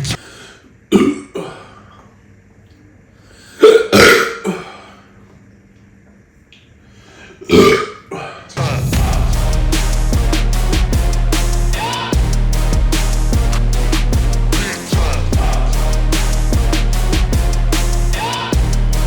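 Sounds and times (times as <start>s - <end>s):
man burping: 7.4s - 8.2s.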